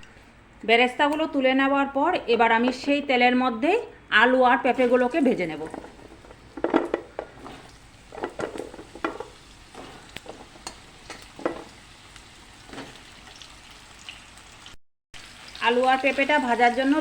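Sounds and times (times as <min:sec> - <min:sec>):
vegetables sizzling in oil: 0:04.7 - 0:17.0
spatula scraping pan: 0:05.7 - 0:11.8.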